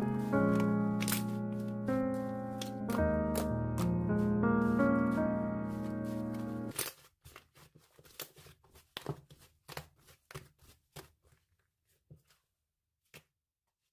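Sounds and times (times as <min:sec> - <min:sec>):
song with piano: 0:00.0 - 0:06.7.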